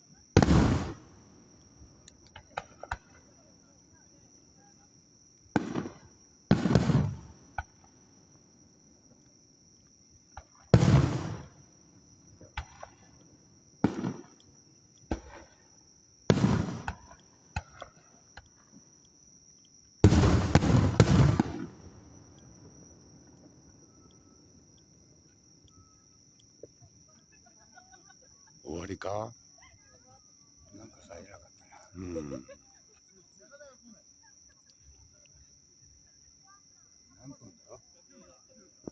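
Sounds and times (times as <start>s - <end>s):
insects chirring: 0.0s - 38.9s
fireworks booming: 0.4s - 1.4s, 5.5s - 7.9s, 10.4s - 11.7s, 12.4s - 13.2s, 13.8s - 14.4s, 15.1s - 15.6s, 16.3s - 18.5s, 20.0s - 23.9s.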